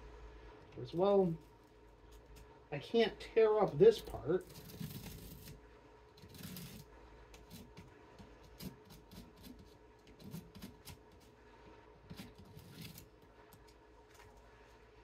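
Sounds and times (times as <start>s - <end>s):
plastic mesh crackling and scraping: 3.6s - 5.6s.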